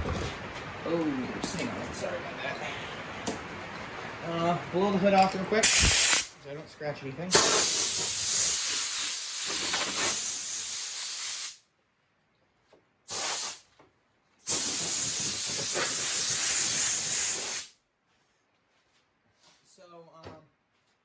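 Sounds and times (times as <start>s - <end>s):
air blow gun hissing: 5.6s - 6.4s, 7.3s - 11.6s, 13.1s - 13.6s, 14.5s - 17.7s.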